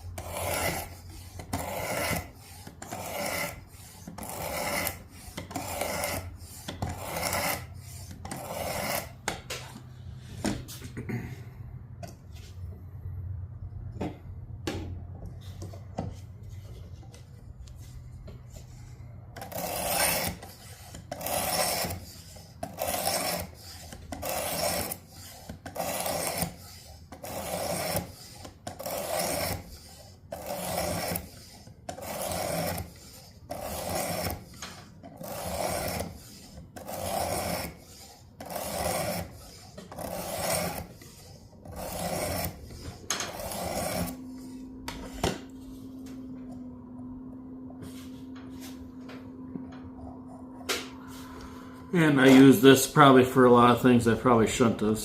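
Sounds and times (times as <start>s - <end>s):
knife rasping on abrasive: 0.0s - 9.8s, 18.5s - 44.7s.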